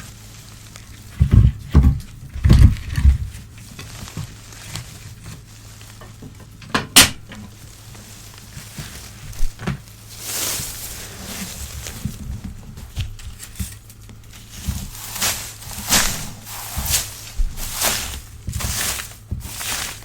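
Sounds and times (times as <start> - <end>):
newspaper thumps and crackles: 0.0 - 20.0
newspaper tearing: 7.5 - 12.2, 13.0 - 20.0
paper snapping: 14.9 - 20.0.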